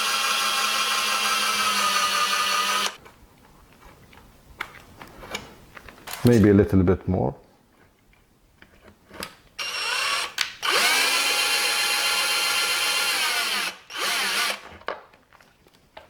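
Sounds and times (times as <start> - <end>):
power drill whining: 0.0 - 3.0, 9.6 - 14.7.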